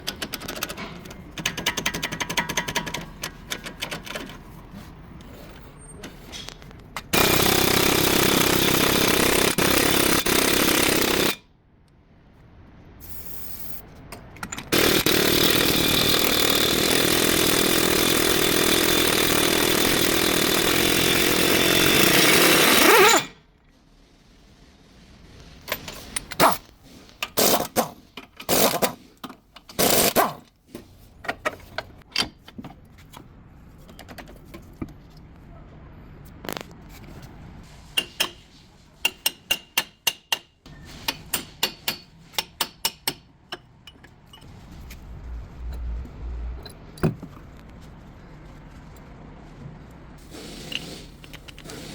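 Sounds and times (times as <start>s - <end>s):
power tool running: 14.7s - 23.3s.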